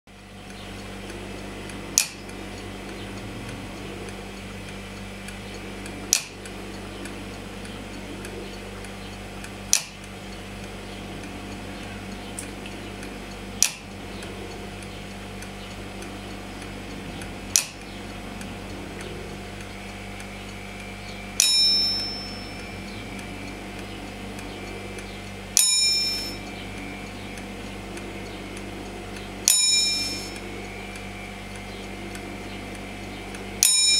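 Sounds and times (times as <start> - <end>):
alarm clock sharp taps: 2.0 - 2.4, 6.1 - 7.1, 9.7 - 10.1, 13.6 - 13.9, 17.5 - 17.9, 20.2 - 23.6, 24.4 - 27.5, 29.2 - 32.3, 33.6 - 33.9
alarm clock bell strikes: 21.4 - 23.7, 25.6 - 27.1, 29.4 - 30.7, 33.6 - 33.9.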